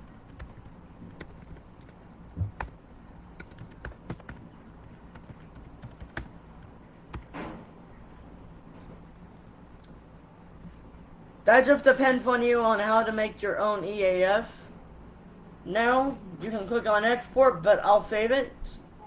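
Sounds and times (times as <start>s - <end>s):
computer keyboard typing: 0.0s - 2.8s, 3.4s - 7.3s, 9.0s - 10.0s.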